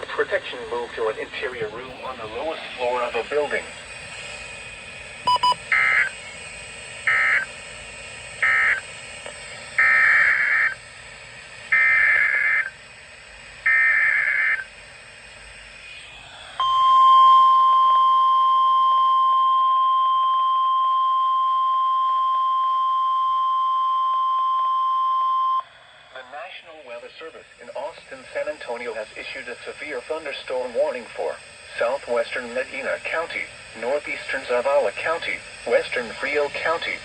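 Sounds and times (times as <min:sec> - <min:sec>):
steady alarm tone: 0:01.5 - 0:11.0, 0:11.7 - 0:26.3, 0:27.2 - 0:37.0
harsh digital data bursts: 0:05.3 - 0:07.6, 0:08.4 - 0:08.9.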